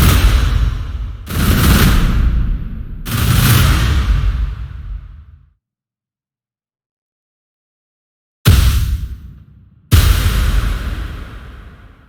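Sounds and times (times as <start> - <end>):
sound-design hit tail: 0.0 - 5.2.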